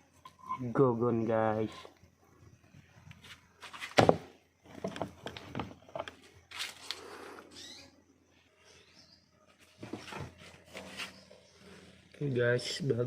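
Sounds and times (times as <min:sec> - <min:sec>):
thump on a board: 0:04.0 - 0:04.3.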